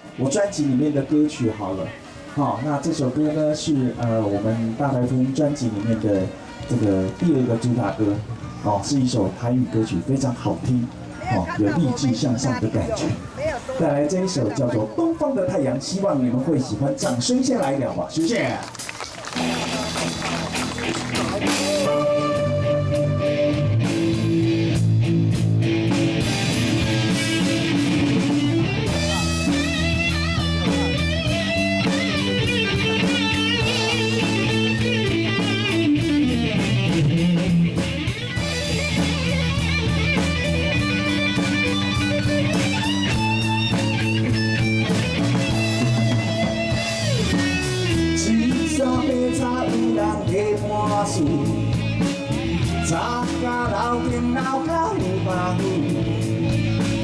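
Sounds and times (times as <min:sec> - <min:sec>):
drum kit: 0:18.2 - 0:57.0
electric guitar lead: 0:19.2 - 0:57.0.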